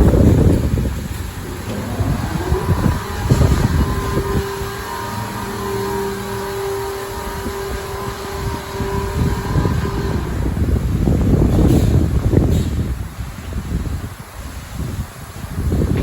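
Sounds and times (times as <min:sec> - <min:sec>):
low rumble: 0:00.0 - 0:12.7
motor whine: 0:01.0 - 0:11.7.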